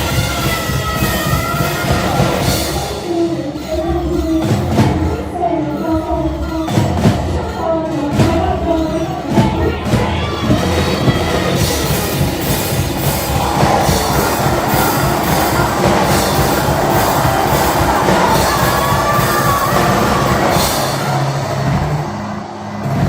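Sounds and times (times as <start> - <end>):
drum beat: 0.0 - 2.8, 9.4 - 23.0
live band playing loud rock: 0.0 - 5.1, 9.3 - 23.0
cymbals: 0.0 - 23.0.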